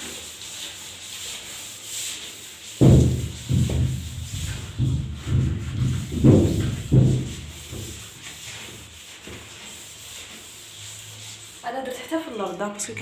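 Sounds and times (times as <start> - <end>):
hand scrubbing strokes: 0.0 - 13.0
dull low thud: 2.8 - 7.9.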